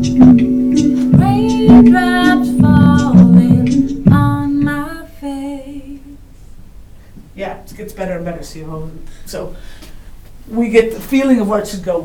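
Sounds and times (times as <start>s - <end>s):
instrumental backing music: 0.0s - 5.3s
woman singing: 0.8s - 6.2s.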